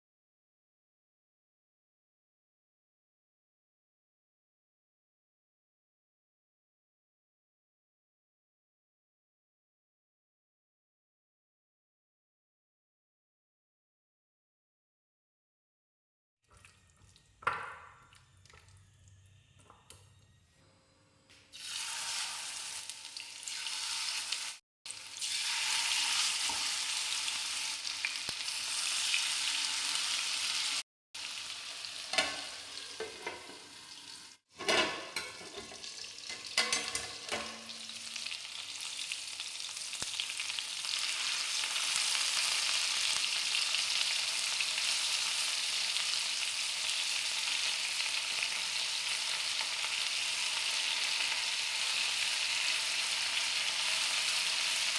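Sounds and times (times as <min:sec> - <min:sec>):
chicken sizzling in hot oil: 0:21.5 - 0:54.9.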